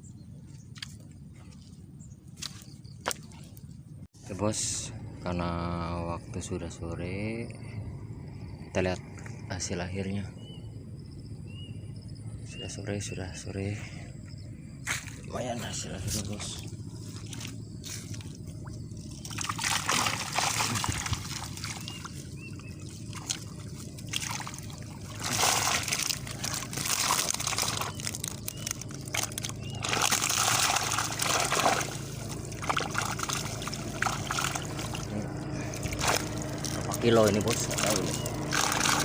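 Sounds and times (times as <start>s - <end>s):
water sloshing and splashing: 0.4s - 3.8s, 14.8s - 39.0s
water trickling: 16.5s - 39.0s.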